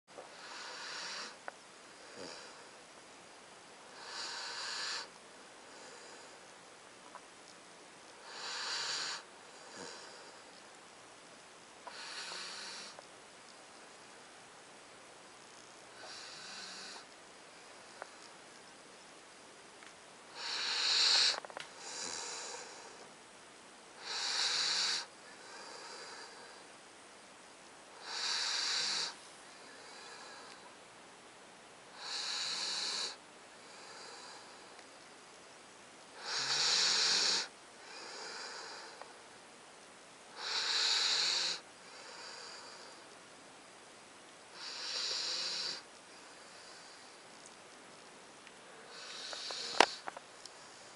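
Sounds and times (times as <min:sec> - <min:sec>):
puppy snoring: 0:00.3 - 0:02.8, 0:03.9 - 0:06.4, 0:08.2 - 0:10.6, 0:11.8 - 0:13.0, 0:16.0 - 0:17.2, 0:20.3 - 0:23.0, 0:24.0 - 0:26.6, 0:28.0 - 0:30.6, 0:31.9 - 0:34.6, 0:36.2 - 0:39.1, 0:40.3 - 0:43.0, 0:44.5 - 0:47.2, 0:48.9 - 0:50.2
soft breath: 0:08.2 - 0:10.7, 0:20.3 - 0:23.2, 0:24.0 - 0:26.8, 0:28.0 - 0:30.8, 0:32.0 - 0:35.4, 0:36.1 - 0:39.4, 0:40.4 - 0:43.3, 0:44.5 - 0:47.6, 0:48.6 - 0:50.9.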